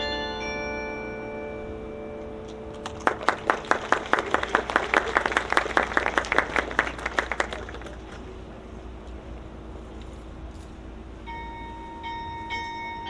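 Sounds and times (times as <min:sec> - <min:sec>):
tower bells ringing: 0:00.0 - 0:05.0, 0:11.2 - 0:13.0
crowd applauding: 0:02.7 - 0:08.5.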